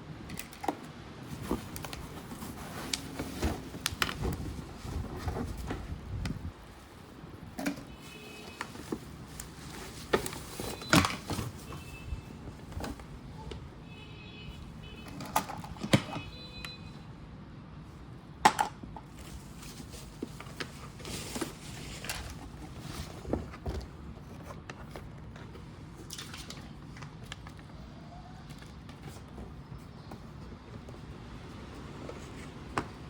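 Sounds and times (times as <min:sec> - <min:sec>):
packaging rustle: 0:00.3 - 0:13.2, 0:19.1 - 0:27.9
knocks and clicks of handling: 0:15.0 - 0:16.8.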